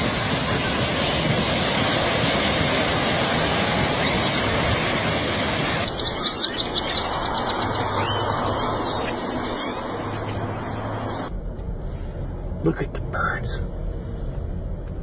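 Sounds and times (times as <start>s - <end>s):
huge flock of birds calling: 2.5s - 11.3s
high bird chirps: 5.8s - 11.3s.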